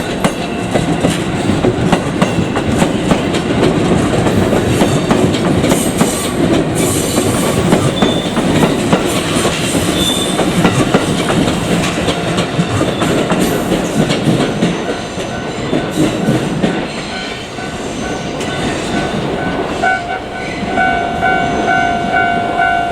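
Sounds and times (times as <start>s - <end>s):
train wheels clattering: 0.0s - 22.9s
steady tone: 17.2s - 22.9s.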